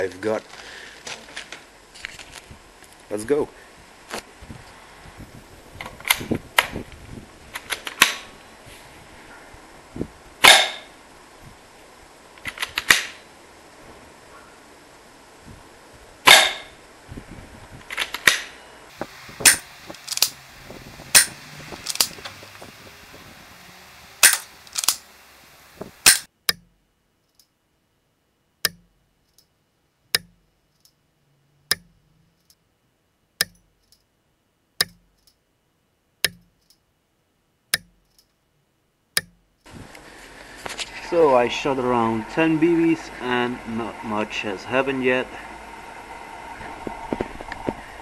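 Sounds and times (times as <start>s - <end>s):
airsoft rifle shots hitting wood: 10.4s - 10.9s, 12.7s - 13.2s, 16.3s - 16.7s, 19.4s - 19.6s, 21.2s - 22.1s, 24.2s - 25.0s, 26.0s - 26.7s.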